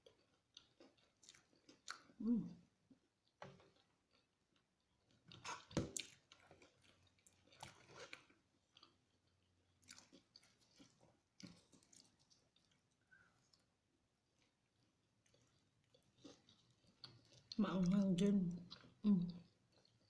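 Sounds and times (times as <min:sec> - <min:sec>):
chewing and biting fried chicken: 0:00.0 - 0:02.2, 0:03.2 - 0:17.6.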